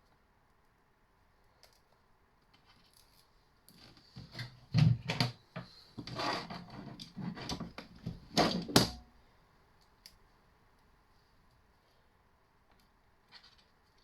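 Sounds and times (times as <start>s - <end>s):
wire insulation scraping and rustling: 2.5s - 9.0s.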